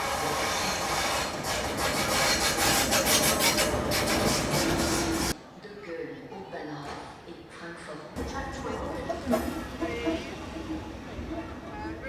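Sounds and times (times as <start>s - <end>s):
train running on rails: 0.0s - 5.4s, 8.2s - 12.0s.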